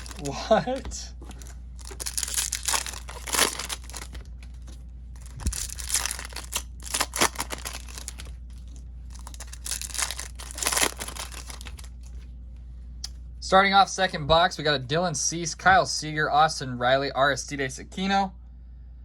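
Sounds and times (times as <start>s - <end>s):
packaging crinkling and tearing: 0.0s - 12.2s
steady low hum: 0.0s - 19.0s.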